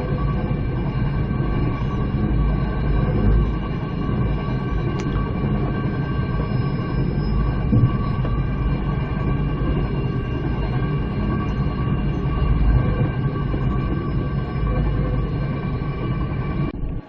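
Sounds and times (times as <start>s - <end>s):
high steady whine: 0.0s - 17.0s.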